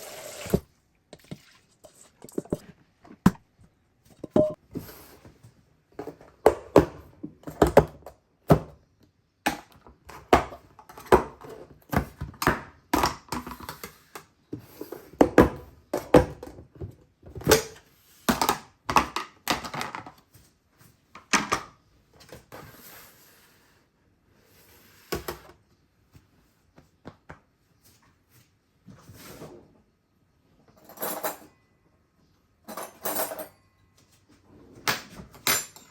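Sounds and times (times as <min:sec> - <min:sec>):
kitchen utensils clattering: 0:30.7 - 0:31.6, 0:32.6 - 0:33.7, 0:34.7 - 0:35.9.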